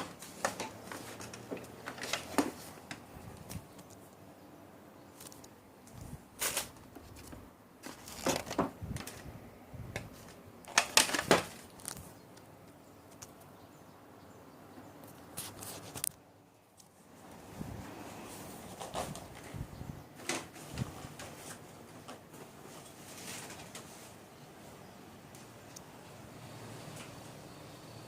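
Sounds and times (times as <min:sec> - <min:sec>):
handling rustles and clicks: 0:00.0 - 0:04.3, 0:05.1 - 0:13.5.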